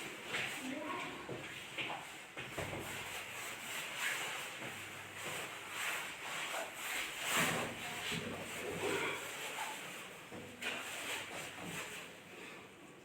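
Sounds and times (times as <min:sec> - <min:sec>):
hands rubbing on clothing: 0:02.8 - 0:12.2.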